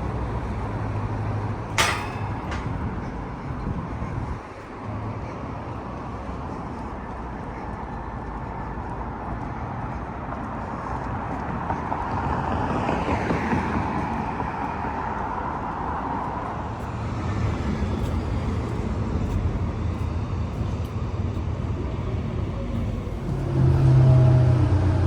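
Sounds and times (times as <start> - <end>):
road traffic rumble: 0.0 - 25.0
vehicle passing by: 22.5 - 25.0.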